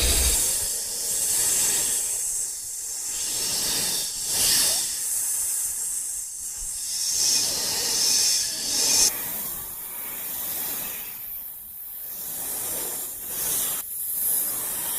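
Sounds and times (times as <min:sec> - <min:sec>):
snake hissing: 0:00.0 - 0:05.4.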